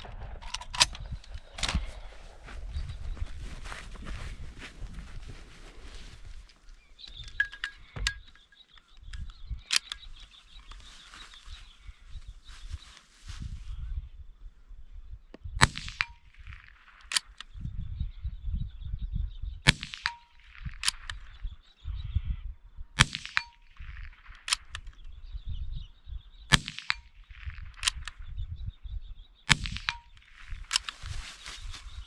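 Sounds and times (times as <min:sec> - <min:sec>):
rifle shots: 0:23.0 - 0:23.5.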